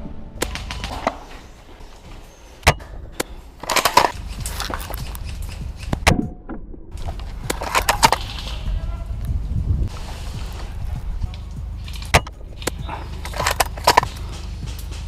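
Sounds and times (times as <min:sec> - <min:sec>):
sharp clicks and knocks: 0:00.4 - 0:01.4, 0:02.6 - 0:09.4, 0:11.3 - 0:15.0
low rumble: 0:02.8 - 0:15.0.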